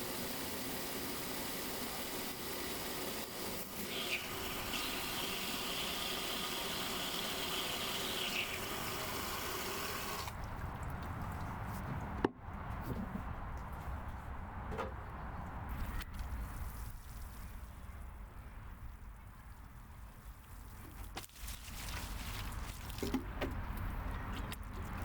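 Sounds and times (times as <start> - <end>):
water splashing onto soil: 21.0 - 23.1.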